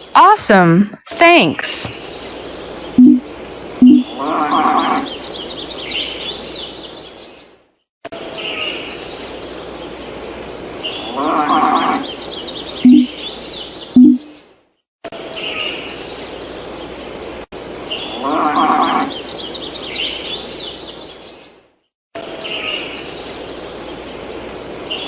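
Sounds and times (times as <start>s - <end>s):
birds chirping: 0.0s - 7.5s, 8.3s - 14.5s
loud animal call: 3.8s - 5.2s, 11.0s - 12.2s, 18.1s - 19.2s.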